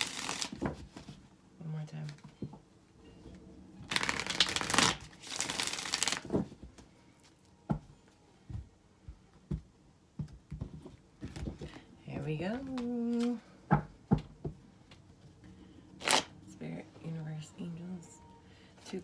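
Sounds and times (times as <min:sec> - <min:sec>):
cards riffle shuffling: 0:00.0 - 0:00.8, 0:03.9 - 0:06.4.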